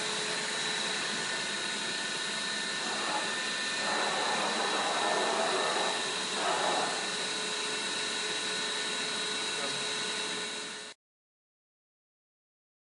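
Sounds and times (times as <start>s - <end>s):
machining center whirring: 0.0s - 10.8s.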